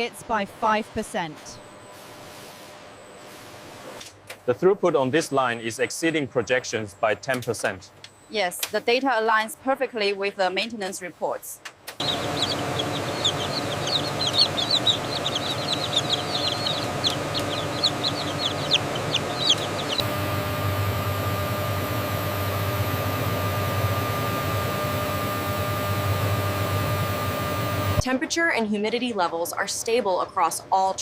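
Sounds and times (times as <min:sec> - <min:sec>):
mechanical hum: 0:00.0 - 0:31.0
chicks peeping: 0:12.0 - 0:20.1
thin whine: 0:12.0 - 0:28.0.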